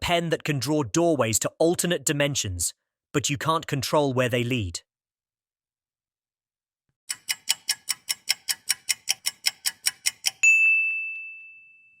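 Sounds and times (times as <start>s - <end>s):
fast clock ticking: 7.1s - 10.4s
bright ding: 10.4s - 12.0s.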